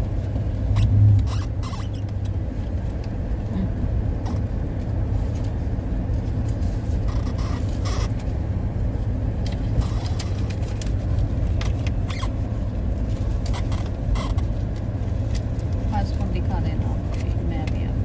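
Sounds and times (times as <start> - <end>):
car cabin rumble: 0.0 - 18.0
faint clicks and squeaks: 0.6 - 3.2, 6.9 - 8.3, 9.4 - 12.7, 13.3 - 14.8.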